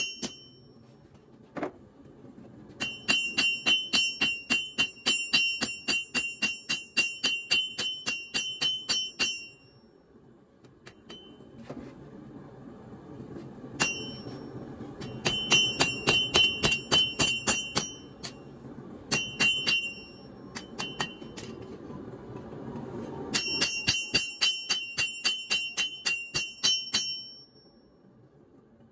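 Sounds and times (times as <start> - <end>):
hammer ringing on steel anvil: 0.0 - 0.7, 2.8 - 9.8, 11.0 - 11.5, 13.8 - 18.5, 19.1 - 21.6, 23.4 - 27.8.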